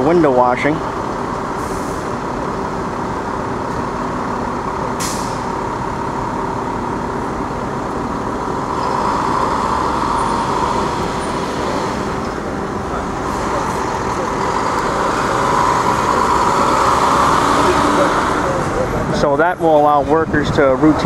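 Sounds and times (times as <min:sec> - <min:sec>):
city street noise: 0:00.0 - 0:21.0
heavy diesel engine running: 0:00.0 - 0:21.0
short hiss: 0:05.0 - 0:05.5.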